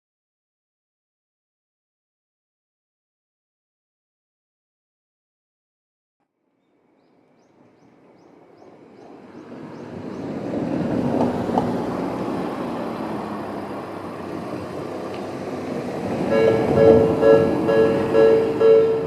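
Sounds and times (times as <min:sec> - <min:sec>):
road traffic rushing past: 0:06.7 - 0:19.0
level crossing warning bell: 0:16.2 - 0:19.0.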